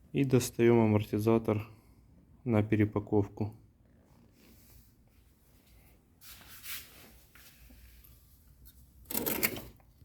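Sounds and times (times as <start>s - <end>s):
soft rustle: 4.0s - 9.0s.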